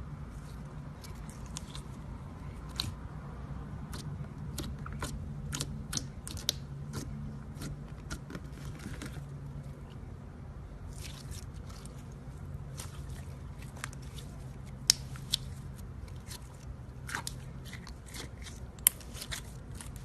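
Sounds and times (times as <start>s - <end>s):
slime squeezed crackling and popping: 10.9s - 20.0s.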